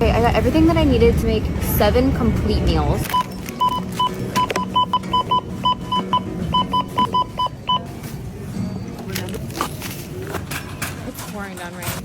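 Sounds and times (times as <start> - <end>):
barcode scanner beeping: 3.1 - 7.9.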